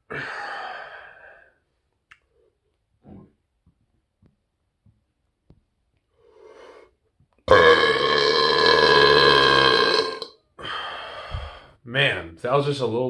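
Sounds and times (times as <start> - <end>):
faint breath: 6.1 - 7.0, 10.6 - 11.8
man burping: 7.5 - 10.3.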